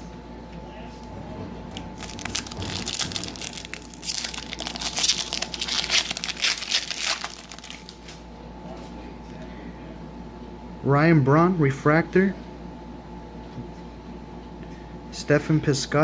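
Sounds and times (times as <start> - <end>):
foil wrapper tearing and crinkling: 1.8 - 8.2.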